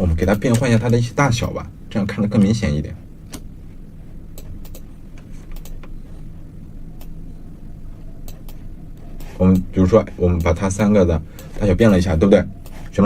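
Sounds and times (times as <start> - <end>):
steady low hum: 0.0 - 13.0
computer mouse clicking: 0.2 - 1.6, 4.3 - 6.0, 7.0 - 7.2, 8.0 - 10.7.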